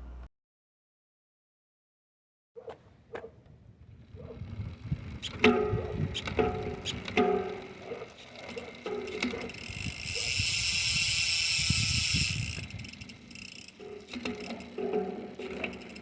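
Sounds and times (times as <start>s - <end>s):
bicycle freewheel ratcheting: 4.0s - 16.0s.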